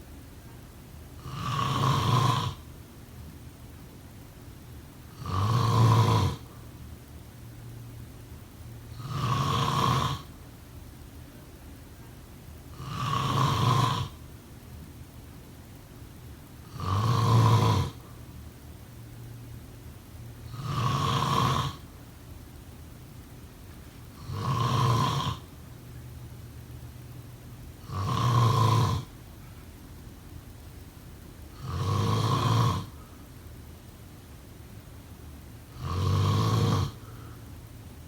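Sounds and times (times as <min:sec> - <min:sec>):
person snoring: 0:01.2 - 0:02.6, 0:05.2 - 0:06.5, 0:08.9 - 0:10.3, 0:12.7 - 0:14.2, 0:16.7 - 0:18.0, 0:20.5 - 0:21.8, 0:24.2 - 0:25.5, 0:27.8 - 0:29.1, 0:31.6 - 0:33.0, 0:35.7 - 0:37.4.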